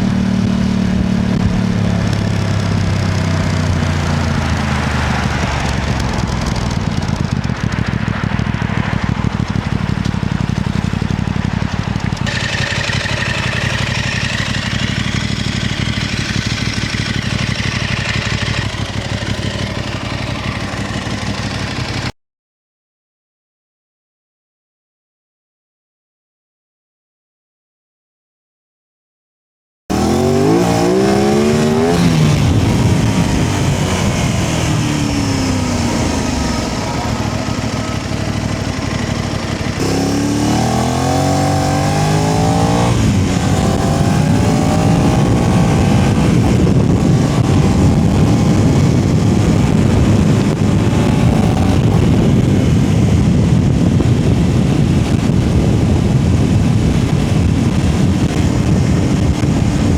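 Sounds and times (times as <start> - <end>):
motorcycle engine revving: 0.0 - 22.1, 29.9 - 59.9
wind rushing: 29.9 - 59.9.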